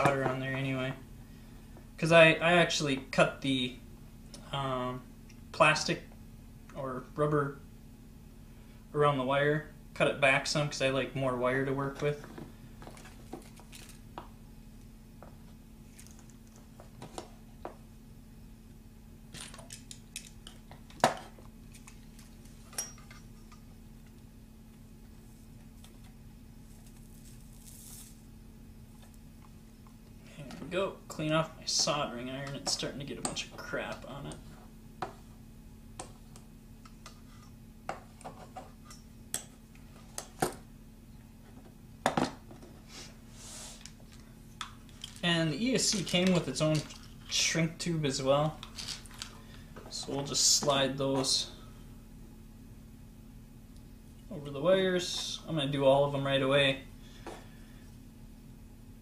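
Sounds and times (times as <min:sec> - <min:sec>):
steady low hum: 0:00.0 - 0:59.0
clicks of tools and wire handled: 0:19.3 - 0:24.2, 0:36.0 - 0:40.6.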